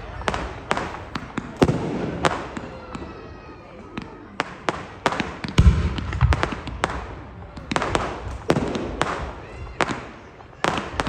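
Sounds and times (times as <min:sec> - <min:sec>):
deep heavy firework boom: 0:00.0 - 0:03.1, 0:05.4 - 0:09.9
aerial fireworks bangs: 0:00.0 - 0:03.4, 0:04.0 - 0:11.0.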